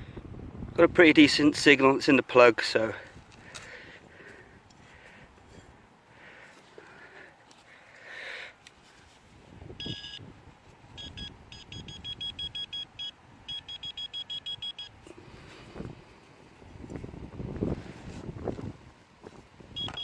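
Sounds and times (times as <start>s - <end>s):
wind noise: 0.0s - 1.6s, 9.3s - 12.8s, 14.4s - 20.0s
metal detector beeping: 9.8s - 10.2s, 11.0s - 15.0s, 19.8s - 20.0s.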